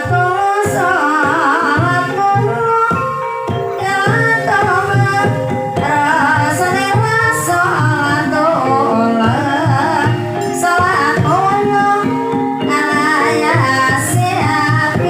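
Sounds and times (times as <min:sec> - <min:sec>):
drum strokes: 0:00.0 - 0:15.0
person singing ornamented melody: 0:00.0 - 0:15.0
sustained gamelan tones: 0:00.0 - 0:15.0.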